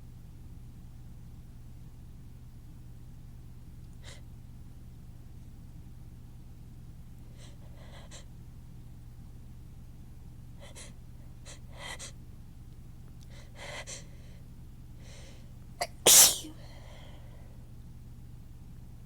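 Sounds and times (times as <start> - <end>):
person sneezing: 15.8 - 16.6.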